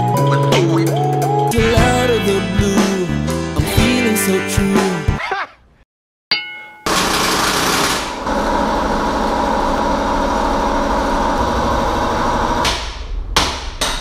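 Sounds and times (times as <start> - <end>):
sharp metallic knocks: 6.3 - 7.3, 12.6 - 14.0
power tool running: 6.9 - 12.6.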